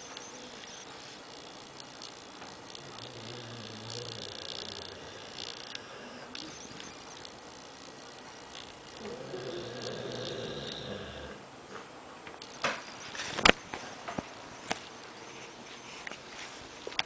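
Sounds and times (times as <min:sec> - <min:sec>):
dog snoring: 0:02.7 - 0:07.1, 0:08.9 - 0:11.4.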